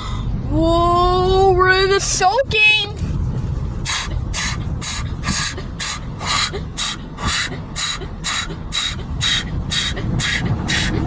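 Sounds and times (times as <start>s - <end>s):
low machinery rumble: 0.0s - 11.0s
water jets hissing on car: 3.0s - 11.0s.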